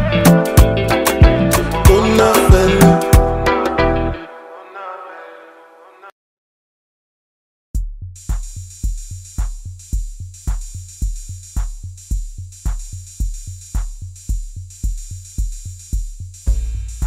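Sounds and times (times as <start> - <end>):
deep booming kick drum: 0.0 - 3.3, 7.8 - 17.0
hi-hat ticks: 8.2 - 17.0.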